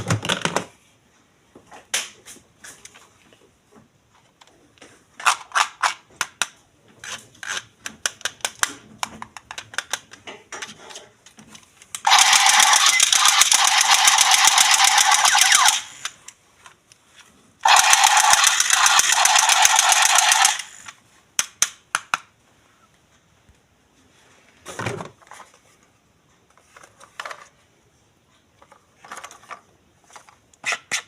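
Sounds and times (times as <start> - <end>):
plastic toy clicking and tapping: 7.4 - 10.3
toy gun rapid-fire rattling: 12.0 - 16.2, 17.6 - 21.0.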